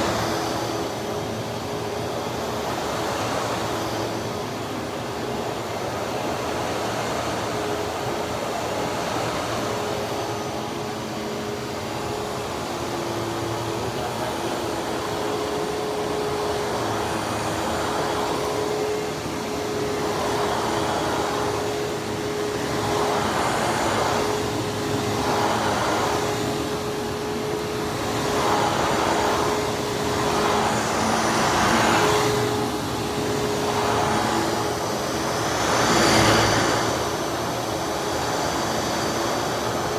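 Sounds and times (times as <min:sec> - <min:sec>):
upright vacuum running: 0:00.0 - 0:39.9.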